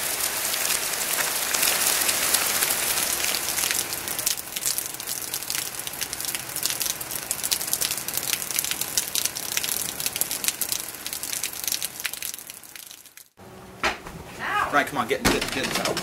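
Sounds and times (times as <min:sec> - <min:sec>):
heavy rain on hard surface: 0:00.0 - 0:13.4.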